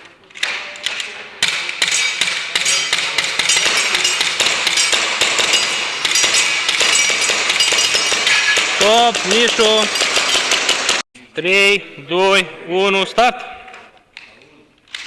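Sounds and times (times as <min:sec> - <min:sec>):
airsoft pistols firing: 0:00.4 - 0:11.0.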